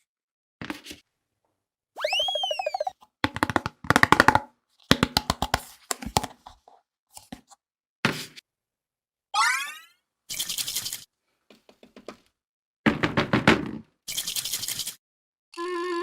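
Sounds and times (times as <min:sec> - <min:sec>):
whistle-like tone: 0:02.0 - 0:03.0.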